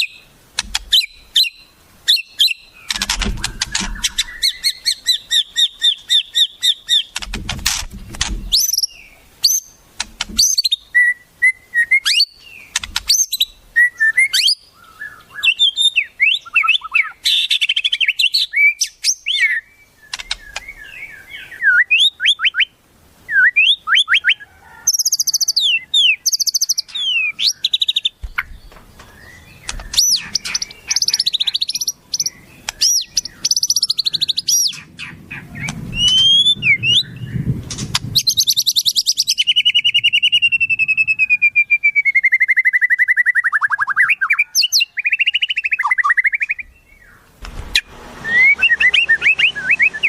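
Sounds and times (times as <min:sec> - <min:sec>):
songbird calls: 0:00.0 - 0:50.0
bird trill sliding down: 0:47.3 - 0:50.0.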